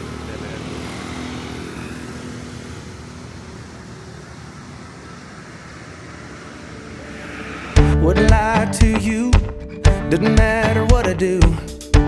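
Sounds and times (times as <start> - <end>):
vehicle engine rumble: 0.0 - 9.7
rushing noise: 0.8 - 9.2.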